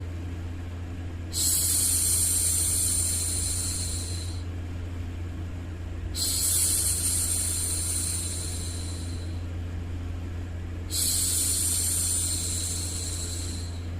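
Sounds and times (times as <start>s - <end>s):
steady low hum: 0.0s - 13.9s
woman shushing: 6.2s - 9.3s.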